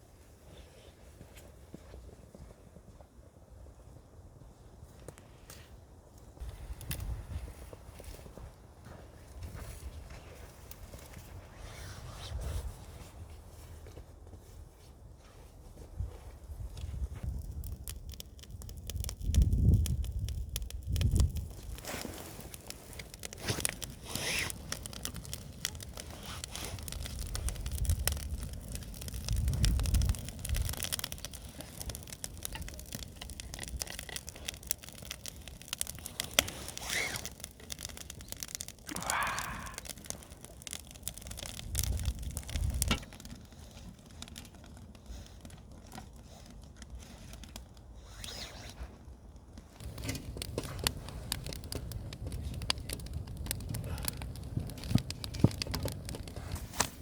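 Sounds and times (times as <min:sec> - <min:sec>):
wood fire crackling: 0:00.0 - 0:57.0
rustling and crinkling: 0:06.4 - 0:38.9, 0:39.9 - 0:57.0.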